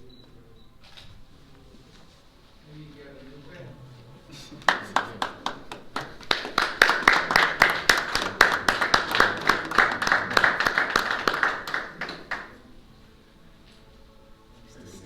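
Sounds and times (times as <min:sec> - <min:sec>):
small group applauding: 0:04.4 - 0:12.7.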